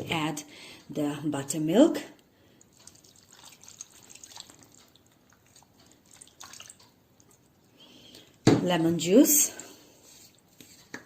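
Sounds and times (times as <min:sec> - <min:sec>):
liquid dripping and splatting: 0:02.6 - 0:07.6.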